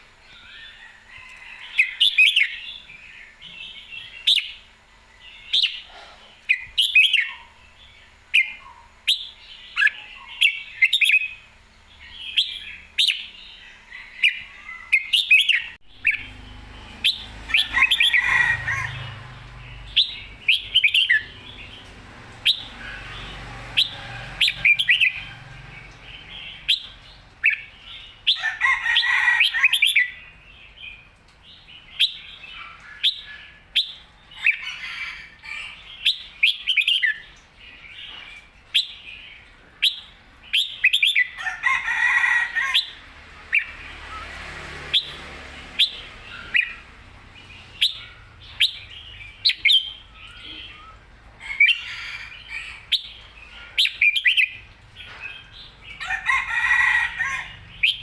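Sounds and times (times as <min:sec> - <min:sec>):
bulbul singing: 0:14.2 - 0:28.6, 0:42.8 - 0:58.0.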